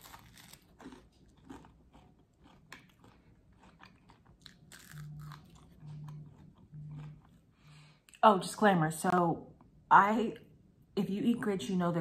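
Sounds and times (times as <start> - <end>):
chewing and crunching food: 0.0 - 8.2
low steady hum: 0.0 - 12.0.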